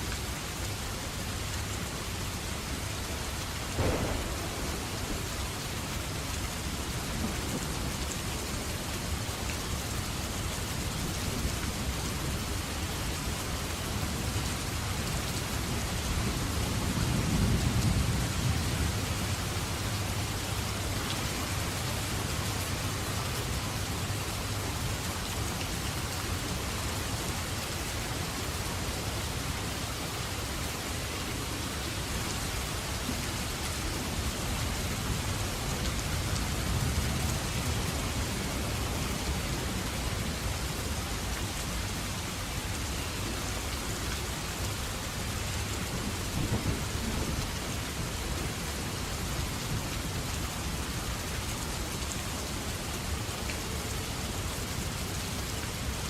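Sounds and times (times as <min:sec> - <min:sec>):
steady rain falling: 0:00.0 - 0:56.0
deep thunder roll: 0:03.8 - 0:05.9
sharp thunder crack: 0:03.8 - 0:06.2.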